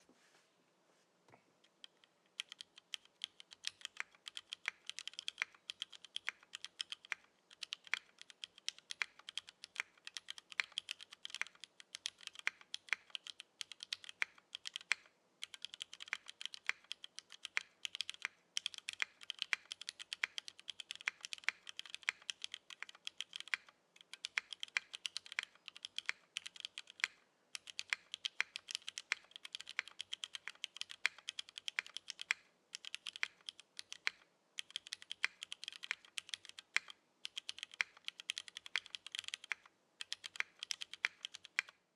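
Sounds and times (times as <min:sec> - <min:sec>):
mechanical keyboard typing: 0:01.6 - 0:41.8.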